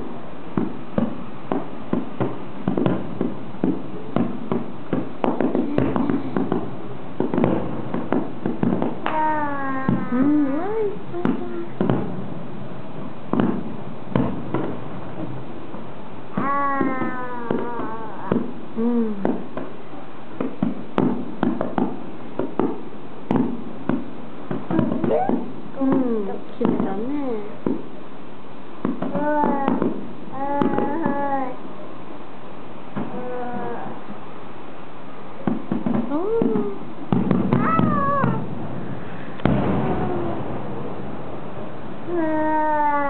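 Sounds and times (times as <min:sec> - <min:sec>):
fireworks popping and crackling: 0:00.0 - 0:43.0
steady hiss: 0:00.0 - 0:43.0
short falling pitched cry: 0:37.6 - 0:38.5, 0:39.6 - 0:40.7.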